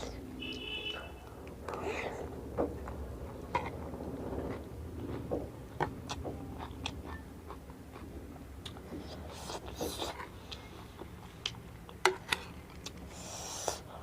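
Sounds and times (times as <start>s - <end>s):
person chewing crunchy snack: 2.8s - 12.0s.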